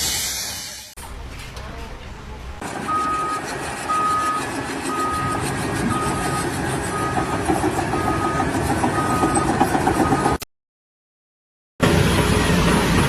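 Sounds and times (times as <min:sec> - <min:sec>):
heavy vehicle engine running: 0:01.0 - 0:10.4, 0:11.8 - 0:13.0
reversing alarm beeping: 0:02.8 - 0:10.4.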